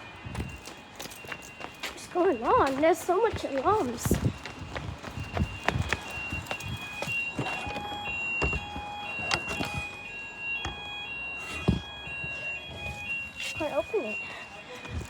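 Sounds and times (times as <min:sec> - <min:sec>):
fire alarms beeping: 0:00.0 - 0:15.0
knocks and thumps: 0:03.6 - 0:10.0, 0:11.5 - 0:13.8.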